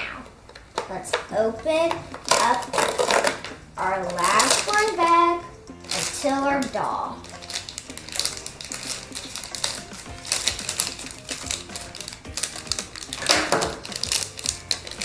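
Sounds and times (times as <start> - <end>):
background music: 0.0 - 15.0
plastic packaging tearing: 2.1 - 5.1, 5.9 - 6.4, 7.2 - 15.0.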